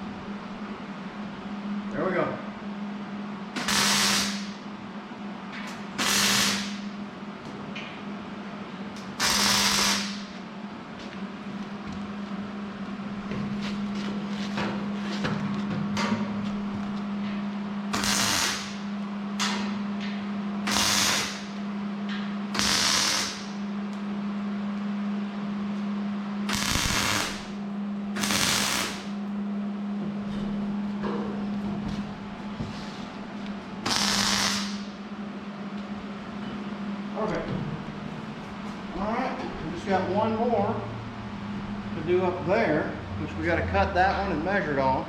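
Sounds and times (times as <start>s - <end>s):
steady electrical hum: 0.0s - 45.0s
crackling tack welds: 3.6s - 4.6s, 5.7s - 6.9s, 9.0s - 10.4s, 17.9s - 19.6s, 20.6s - 21.6s, 22.5s - 23.6s, 26.5s - 27.6s, 28.2s - 29.2s, 33.8s - 34.9s.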